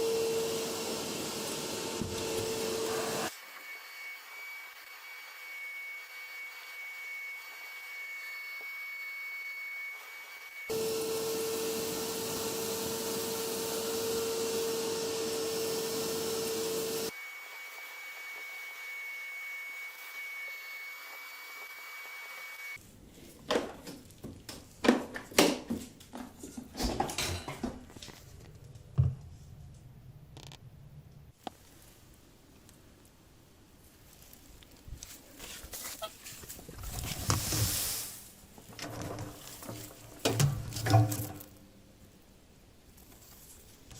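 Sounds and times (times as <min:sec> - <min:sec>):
vacuum running: 0:00.0 - 0:03.3, 0:10.5 - 0:22.8.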